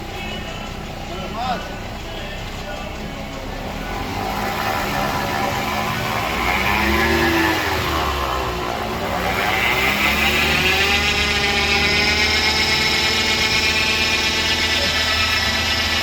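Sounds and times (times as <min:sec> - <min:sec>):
car differential whining: 0:00.0 - 0:16.0.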